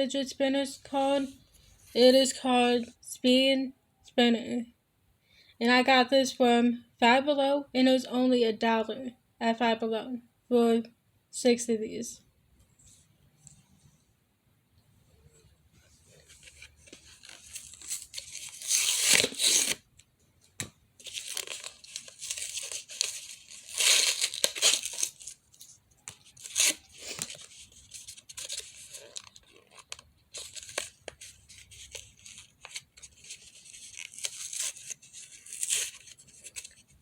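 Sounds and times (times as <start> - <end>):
packaging torn and crinkled: 17.1 - 19.8, 21.0 - 36.9.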